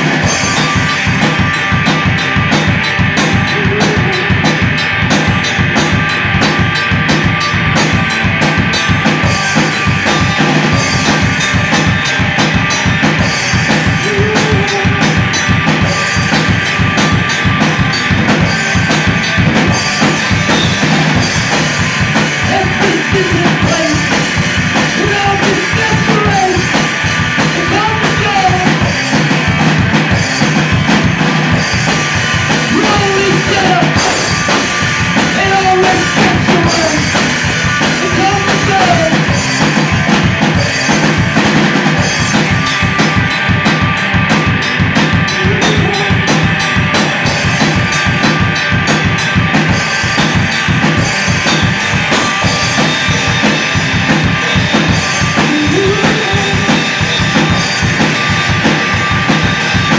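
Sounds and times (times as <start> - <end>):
bass drum: 0.0 - 59.9
rock band playing live: 0.0 - 59.9.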